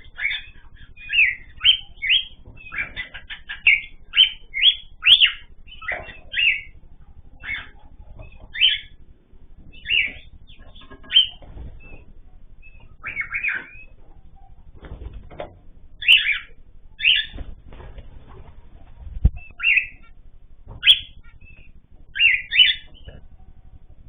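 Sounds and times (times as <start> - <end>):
cage birds chirping: 0.0 - 24.0.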